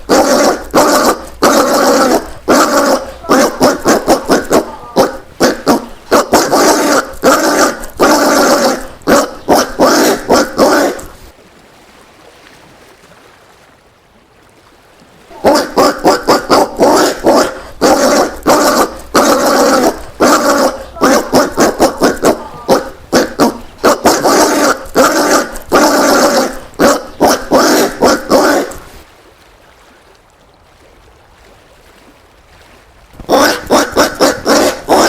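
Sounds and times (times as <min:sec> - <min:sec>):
peccary calling: 0:00.0 - 0:11.3, 0:15.3 - 0:29.0, 0:33.2 - 0:35.0.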